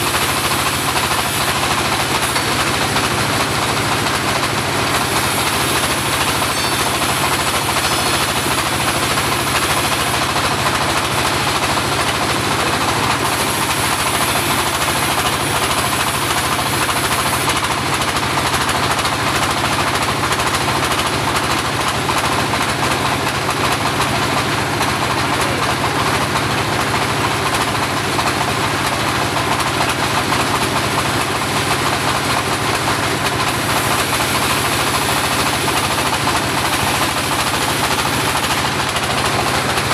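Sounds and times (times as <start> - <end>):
bandsaw droning: 0.0 - 17.6, 31.2 - 39.9.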